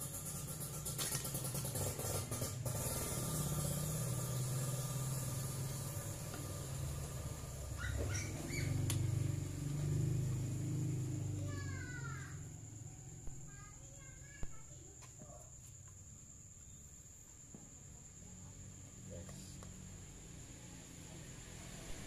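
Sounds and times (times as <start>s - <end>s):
small bird chirping: 7.6s - 9.2s, 11.0s - 17.5s.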